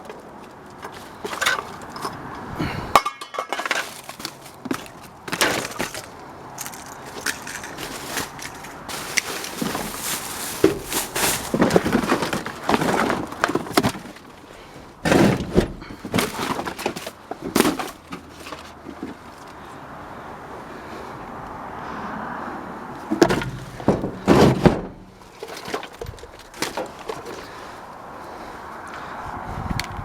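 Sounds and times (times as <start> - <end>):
scrap rummaged in dumpster: 0.0 - 19.5, 23.0 - 28.4.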